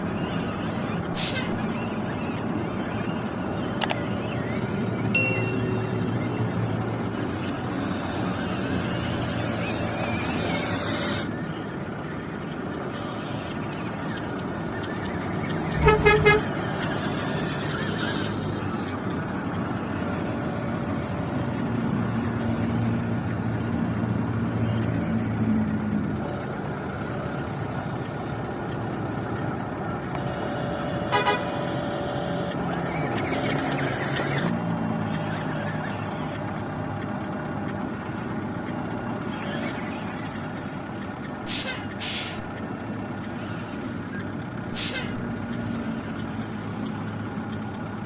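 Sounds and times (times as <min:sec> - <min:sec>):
model vehicles running: 0:00.0 - 0:48.0
toy truck horn toots: 0:15.7 - 0:16.8, 0:30.1 - 0:34.4, 0:41.5 - 0:42.2, 0:44.8 - 0:45.3.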